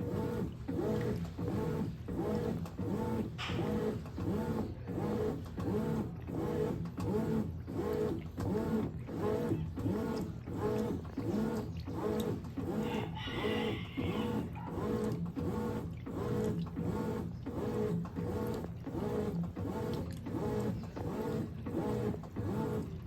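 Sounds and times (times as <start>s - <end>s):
washing machine agitating: 0.0s - 23.0s.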